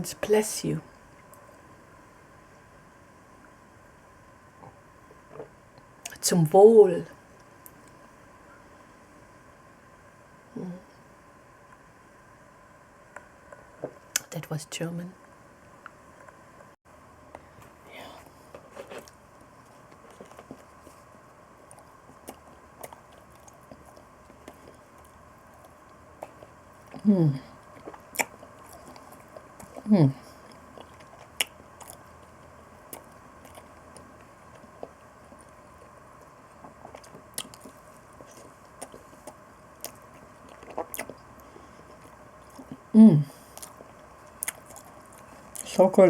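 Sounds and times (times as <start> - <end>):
faint chewing: 15.8 - 45.8.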